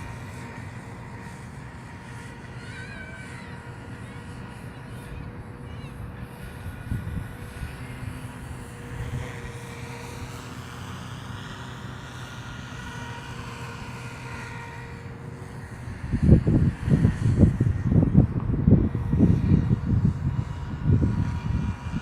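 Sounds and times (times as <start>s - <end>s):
rc helicopter whine: 0.0s - 22.0s
wind rumble on microphone: 3.6s - 10.4s, 15.6s - 22.0s
wind gusts buffeting microphone: 5.0s - 10.3s, 15.8s - 22.0s.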